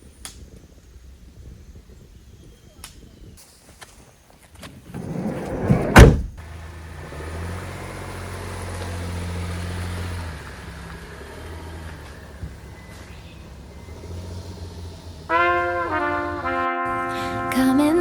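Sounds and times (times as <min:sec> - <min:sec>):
engine humming: 0:04.9 - 0:18.0
car door slamming: 0:05.0 - 0:06.4.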